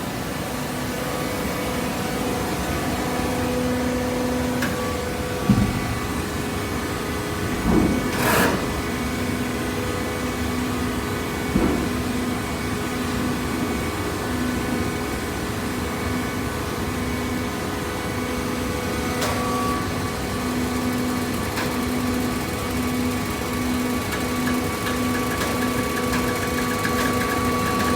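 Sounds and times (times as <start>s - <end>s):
pump motor hum: 17.4s - 27.9s.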